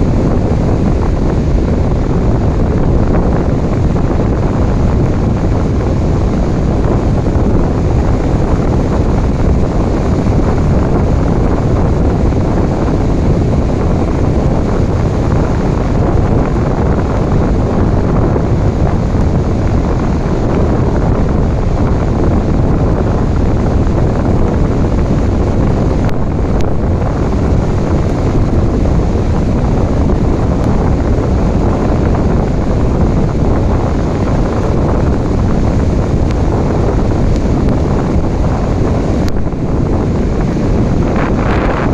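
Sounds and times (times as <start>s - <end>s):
ocean waves: 13.7s - 41.9s.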